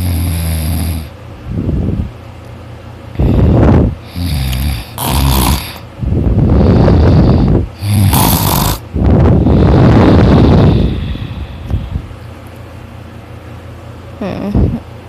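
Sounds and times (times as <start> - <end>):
man snoring loudly: 0.0 - 1.1, 3.2 - 5.9, 6.5 - 8.8.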